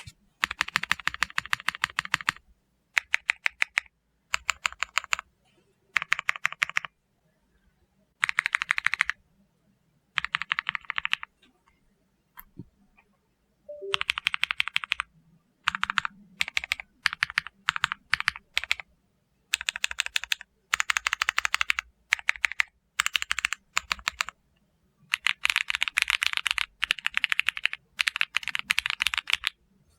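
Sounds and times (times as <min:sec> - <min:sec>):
mechanical keyboard typing: 0:00.0 - 0:02.4, 0:03.0 - 0:05.2, 0:06.0 - 0:06.9, 0:08.2 - 0:09.2, 0:10.2 - 0:11.3, 0:13.7 - 0:18.9, 0:19.5 - 0:24.4, 0:25.1 - 0:29.6.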